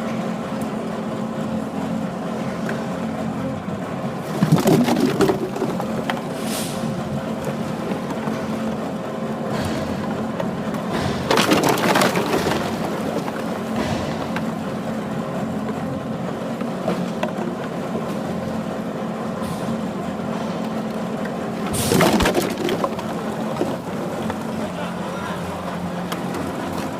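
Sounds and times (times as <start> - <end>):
plastic bottles crackling and crunching: 4.2 - 6.4, 11.2 - 14.4, 21.7 - 24.6.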